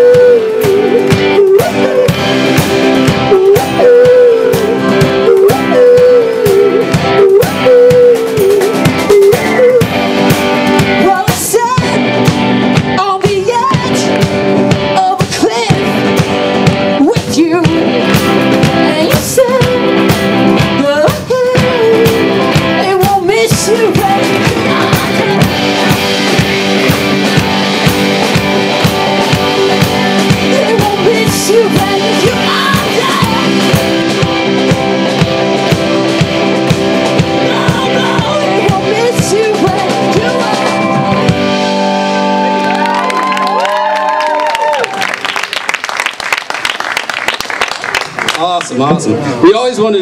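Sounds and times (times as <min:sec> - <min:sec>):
live rock band playing: 0:00.0 - 0:48.3
lead vocal singing: 0:20.7 - 0:26.7, 0:29.9 - 0:33.9, 0:37.4 - 0:41.2.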